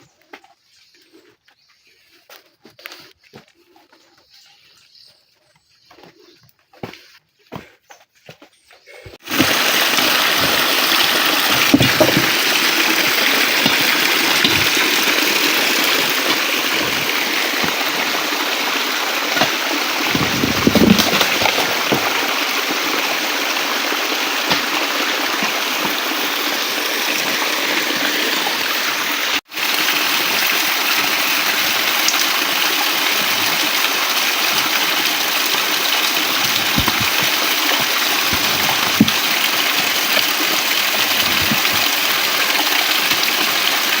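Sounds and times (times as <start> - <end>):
flowing water rushing: 9.2 - 44.0.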